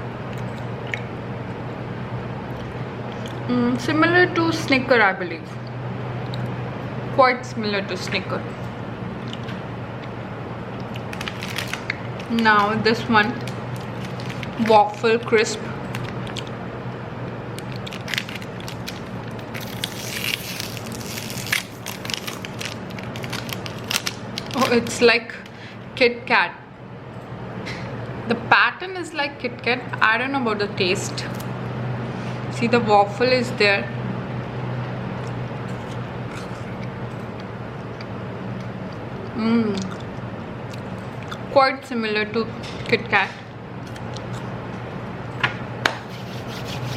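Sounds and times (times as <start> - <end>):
low hum with hiss: 0.0 - 46.9
plastic wrapper crinkling: 10.8 - 15.0, 15.9 - 16.5, 17.6 - 25.0.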